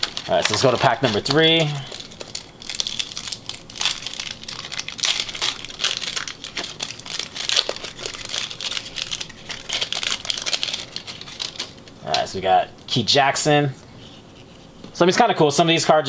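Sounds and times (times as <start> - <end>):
card pack wrapper crinkling: 0.0 - 12.6.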